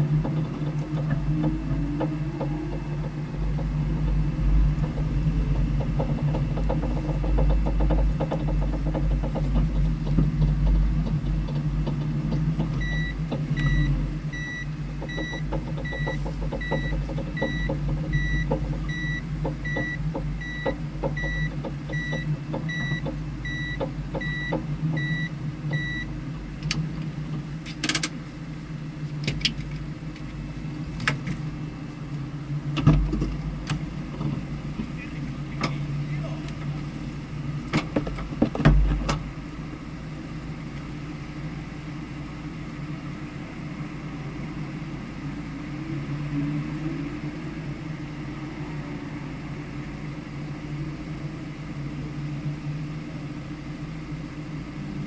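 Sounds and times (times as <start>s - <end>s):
car engine running: 0.0s - 55.0s
electronic warning chime beeping: 12.8s - 26.1s.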